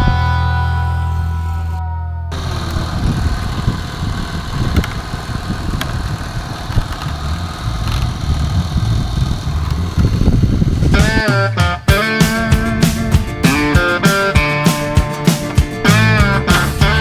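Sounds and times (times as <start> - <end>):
engine low rumble: 0.0 - 11.2
faint clicks: 2.4 - 11.1.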